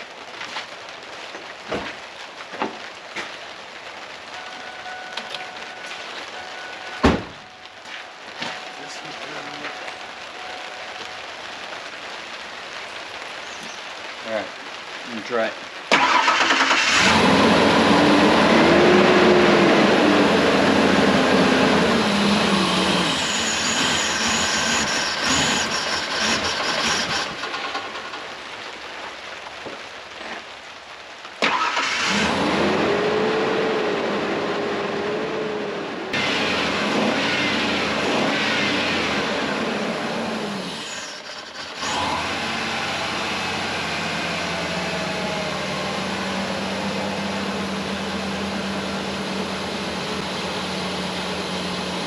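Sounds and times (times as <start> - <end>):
engine starting and revving: 15.9 - 28.2, 31.4 - 34.9, 36.2 - 47.0.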